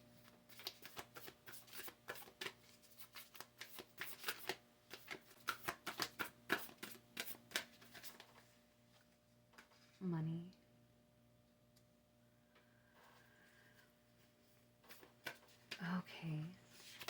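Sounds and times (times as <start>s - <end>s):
cards being shuffled: 0.2s - 8.5s, 14.8s - 15.8s, 16.7s - 17.0s.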